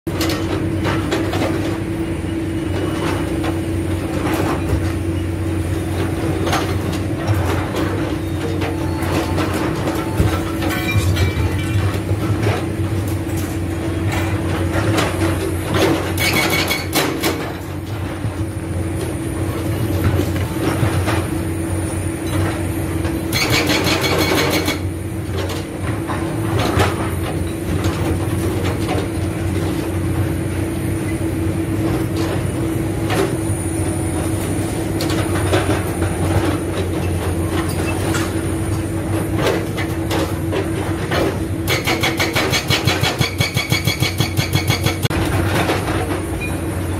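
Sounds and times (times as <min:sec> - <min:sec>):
diesel engine running: 0:00.1 - 0:46.9
hydraulic breaker hammering: 0:15.8 - 0:17.7, 0:23.3 - 0:24.9, 0:41.1 - 0:45.8.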